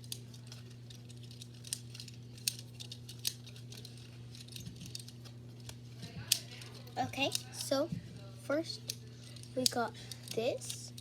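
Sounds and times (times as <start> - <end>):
cards clicking and crinkling: 0.0 - 7.8
steady low hum: 0.0 - 11.0.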